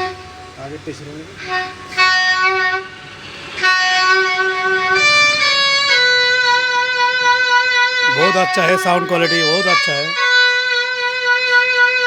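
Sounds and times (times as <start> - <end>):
electronic keyboard horn-like notes: 3.7 - 12.0.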